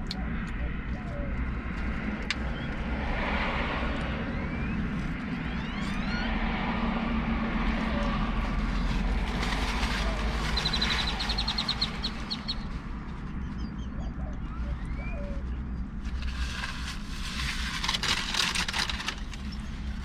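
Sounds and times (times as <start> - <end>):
steady traffic noise: 0.0 - 20.0
birds chirping and trilling: 0.1 - 6.9, 9.3 - 16.0.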